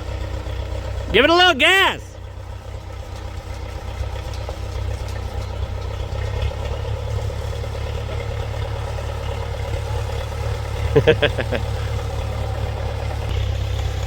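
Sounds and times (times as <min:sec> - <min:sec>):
backhoe engine running: 0:00.0 - 0:14.0.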